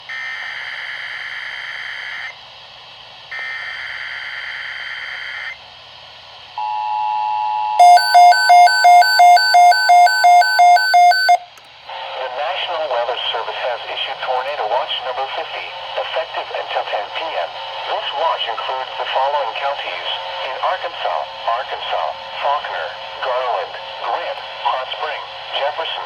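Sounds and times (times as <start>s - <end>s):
rapid beeping: 7.8s - 11.5s.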